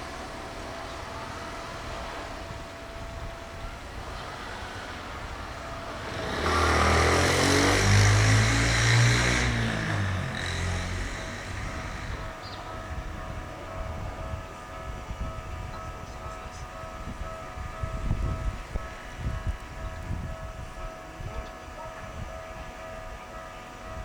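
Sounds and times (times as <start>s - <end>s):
motor vehicle passing: 3.8s - 13.0s.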